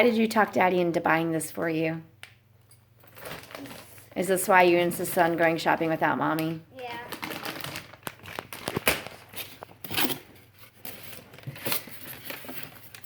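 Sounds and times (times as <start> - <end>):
packaging crinkling and rustling: 3.0 - 4.1, 6.4 - 13.0.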